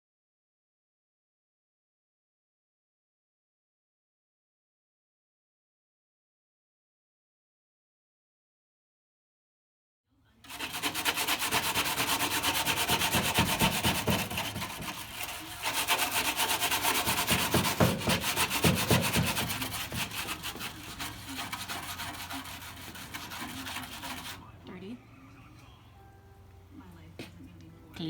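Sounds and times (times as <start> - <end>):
scrubbing grime off a part: 10.5 - 24.5.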